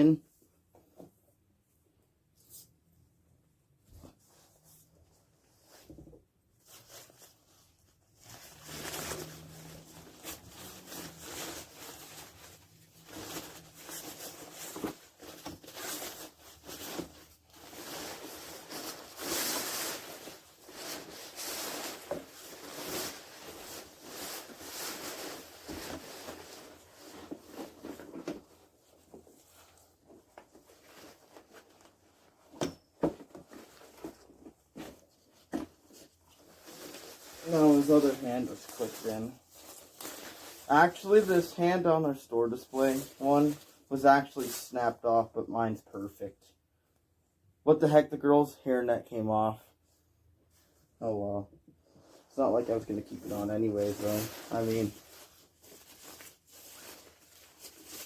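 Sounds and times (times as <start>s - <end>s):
plastic and fabric rustling: 3.8s - 45.0s, 51.8s - 58.0s.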